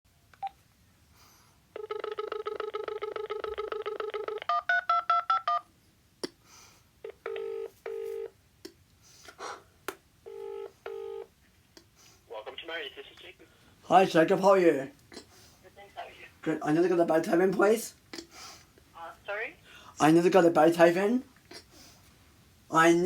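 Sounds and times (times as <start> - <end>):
phone ringback tones: 1.7 - 5.7, 7.0 - 8.4, 10.3 - 11.3
phone dialling beeps: 1.8 - 5.6, 7.0 - 8.3, 10.3 - 11.3.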